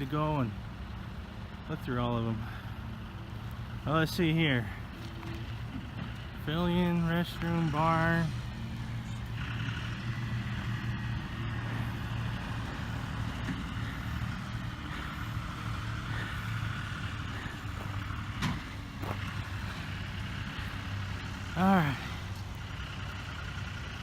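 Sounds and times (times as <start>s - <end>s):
vehicle engine humming: 0.0s - 24.0s.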